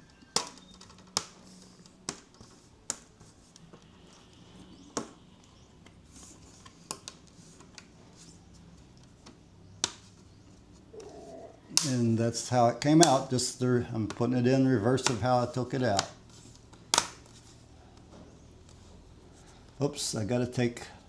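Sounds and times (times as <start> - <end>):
plastic clips snapping into place: 0.1 - 4.3, 11.0 - 13.4, 15.0 - 17.4.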